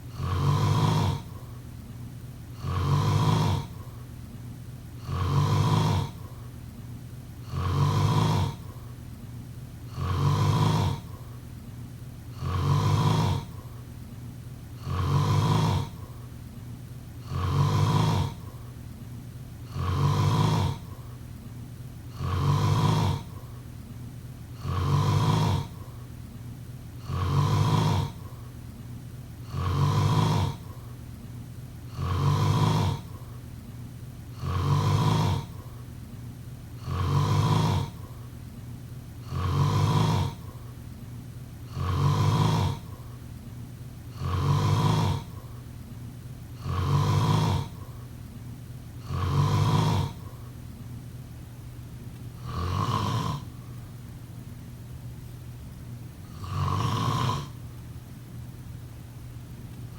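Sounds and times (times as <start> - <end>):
person snoring: 0.1 - 1.6, 2.6 - 4.0, 5.0 - 6.5, 7.4 - 8.9, 9.9 - 11.4, 12.3 - 13.8, 14.8 - 16.3, 17.2 - 18.8, 19.6 - 21.2, 22.1 - 23.6, 24.5 - 26.1, 27.0 - 28.5, 29.4 - 31.0, 31.9 - 33.4, 34.3 - 35.8, 36.8 - 38.3, 39.2 - 40.7, 41.7 - 43.2, 44.1 - 45.6, 46.6 - 48.1, 49.0 - 50.5, 52.4 - 53.8, 56.2 - 57.6.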